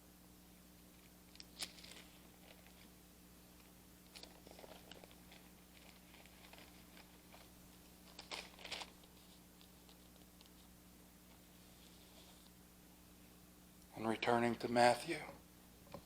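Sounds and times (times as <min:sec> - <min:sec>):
steady low hum: 0:00.0 - 0:16.0
paper rustling: 0:01.5 - 0:02.9, 0:03.6 - 0:10.7.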